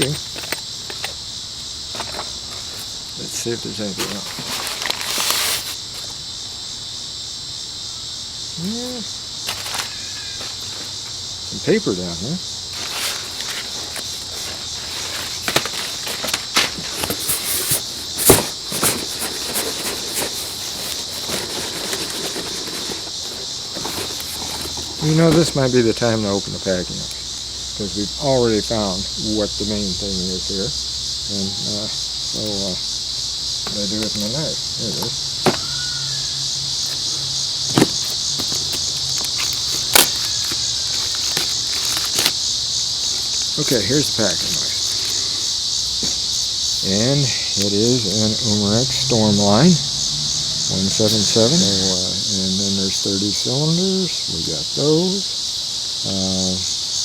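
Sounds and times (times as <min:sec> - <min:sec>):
packing paper rustling and crinkling: 0:00.0 - 0:01.1, 0:02.0 - 0:06.2, 0:09.4 - 0:11.1, 0:12.7 - 0:25.6, 0:36.8 - 0:46.4
high-pitched hiss: 0:00.0 - 0:57.0
insects chirping: 0:00.0 - 0:57.0
knocks in cardboard box: 0:35.4 - 0:35.9, 0:37.7 - 0:42.3.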